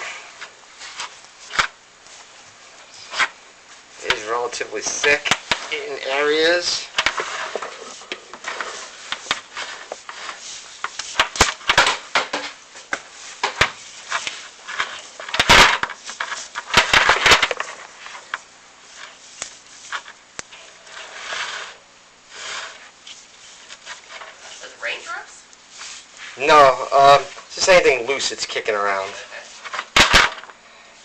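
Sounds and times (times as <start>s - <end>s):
debris ticking in chimney flue: 19.4s - 20.9s.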